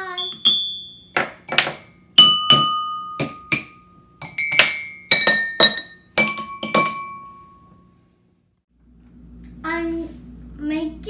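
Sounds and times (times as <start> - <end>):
glasses and dishes struck ringing: 0.0 - 7.9.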